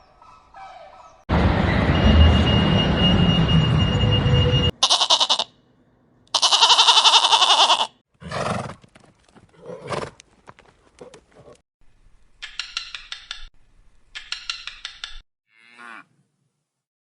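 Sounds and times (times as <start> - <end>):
rumbling noise: 1.3 - 4.7.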